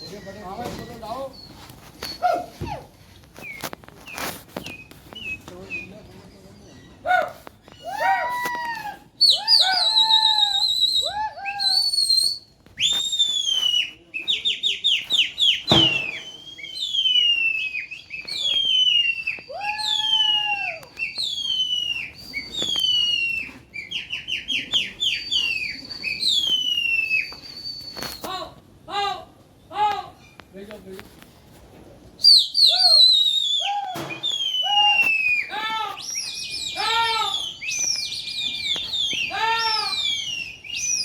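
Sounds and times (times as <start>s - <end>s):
shrill whistling: 9.2s - 28.3s, 32.2s - 41.0s
single knock: 15.7s - 16.3s.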